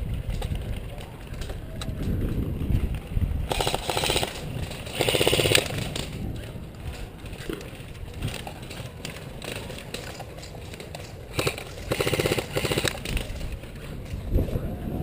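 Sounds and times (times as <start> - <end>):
wind on microphone: 0.0 - 8.7, 11.4 - 15.0
handling rumble: 0.0 - 15.0
airsoft gun firing full auto: 3.5 - 6.1, 11.3 - 13.3.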